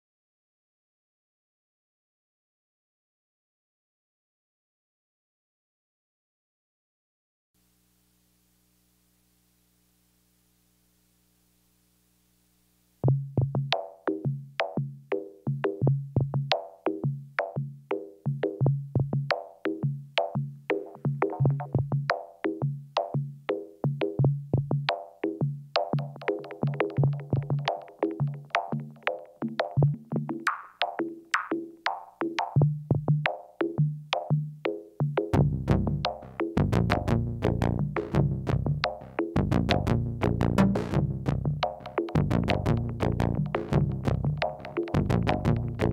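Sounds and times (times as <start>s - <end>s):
electronic synthesizer music: 35.4s - 45.9s.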